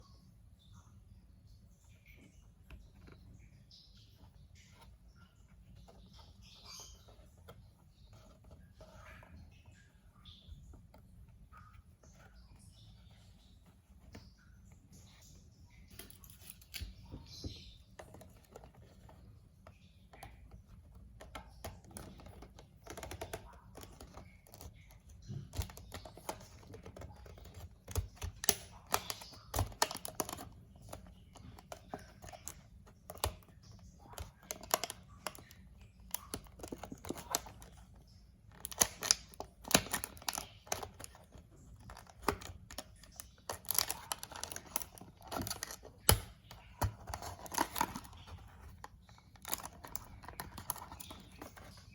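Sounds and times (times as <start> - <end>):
packaging clicks and taps: 20.0 - 51.9
packaging crinkling and tearing: 38.6 - 51.8.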